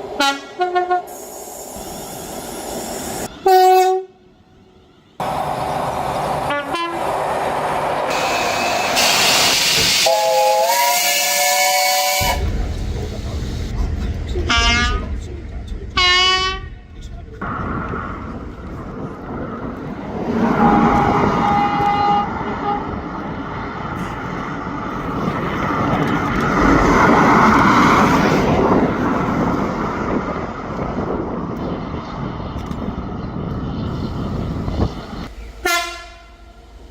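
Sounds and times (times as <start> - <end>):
train running past: 0.0 - 36.9
train horn: 0.2 - 1.1, 3.4 - 4.2, 6.4 - 7.1, 10.0 - 12.4, 16.0 - 16.7, 20.5 - 23.0, 35.6 - 36.6.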